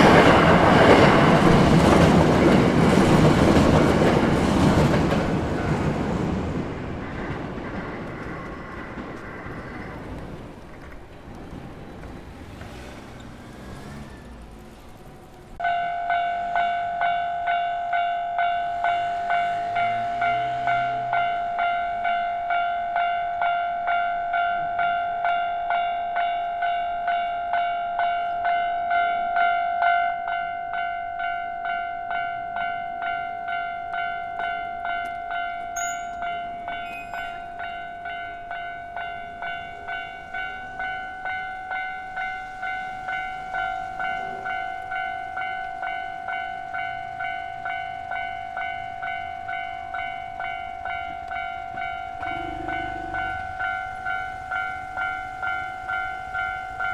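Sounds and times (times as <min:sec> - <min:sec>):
level crossing alarm bell: 0:15.6 - 0:56.9.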